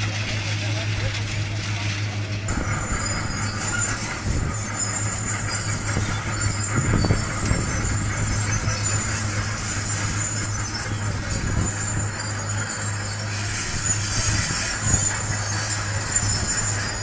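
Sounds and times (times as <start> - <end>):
heavy machinery humming: 0.0 - 17.0
metal-on-metal squeals: 0.0 - 17.0.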